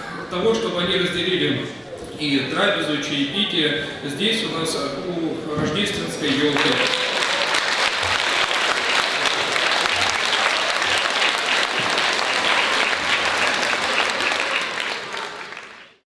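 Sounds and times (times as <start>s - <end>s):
audience applauding: 6.2s - 16.0s.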